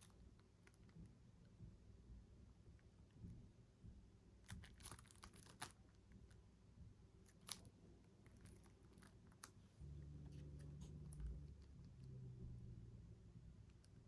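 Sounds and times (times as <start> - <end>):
cd packaging clicks and crinkles: 4.5 - 5.8.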